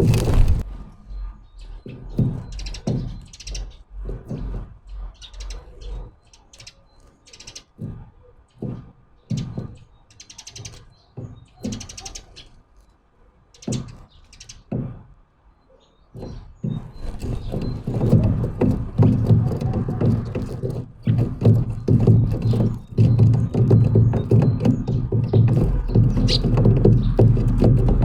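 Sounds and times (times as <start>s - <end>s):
birds pecking on wooden feeder: 0.0s - 0.7s, 2.1s - 12.8s, 16.1s - 28.0s
scratchy rattling bursts: 0.0s - 0.7s, 16.8s - 28.0s.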